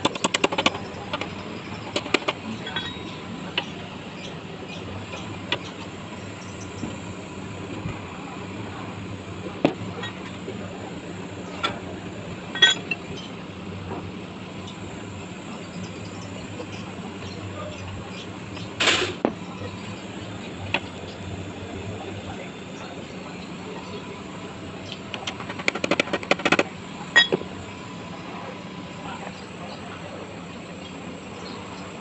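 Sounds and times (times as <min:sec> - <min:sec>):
steady background hum: 0:00.0 - 0:32.0.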